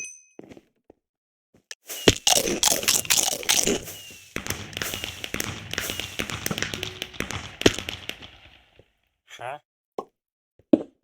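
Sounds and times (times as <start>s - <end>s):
heavier knock: 4.4s - 8.5s.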